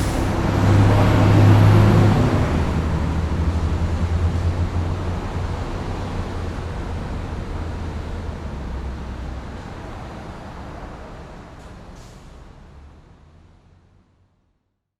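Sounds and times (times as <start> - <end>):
low engine rumble: 0.0 - 13.4
traffic noise: 0.0 - 14.4.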